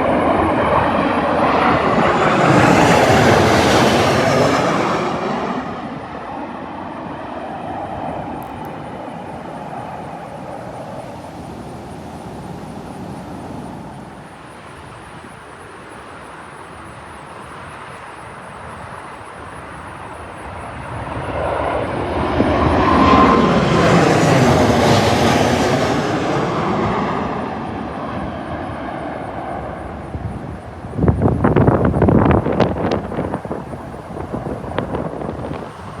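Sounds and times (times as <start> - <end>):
jet plane flying low overhead: 0.0 - 36.0.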